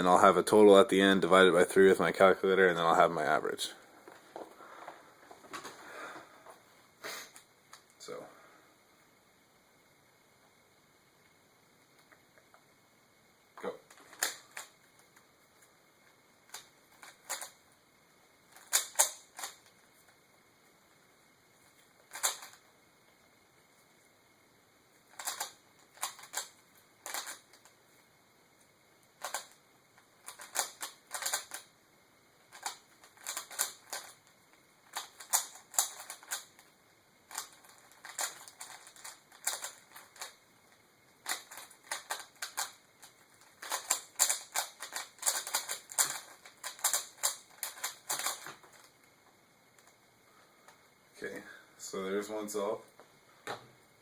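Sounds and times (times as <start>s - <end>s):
plastic puzzle cube clicking: 13.9s - 14.7s, 16.5s - 17.6s, 18.5s - 19.7s, 22.1s - 22.6s, 25.1s - 27.7s, 29.2s - 29.6s, 30.2s - 31.7s, 32.5s - 34.2s, 34.8s - 36.6s, 37.3s - 40.4s, 41.2s - 48.9s.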